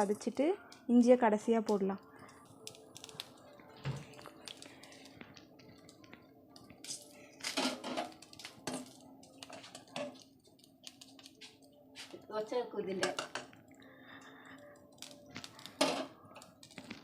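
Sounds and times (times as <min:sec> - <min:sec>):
utensils clinking against a pot: 0:06.8 - 0:10.3, 0:13.0 - 0:13.6, 0:15.6 - 0:16.8.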